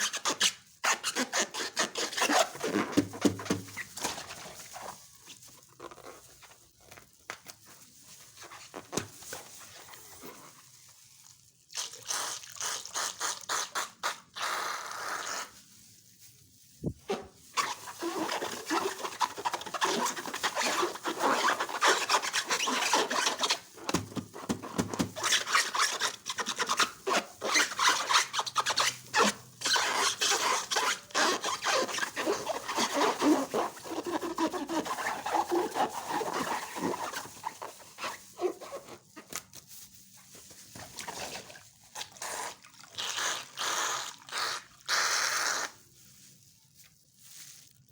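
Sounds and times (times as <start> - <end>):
slime squeezed by hand: 11.6 - 15.6, 40.6 - 45.9.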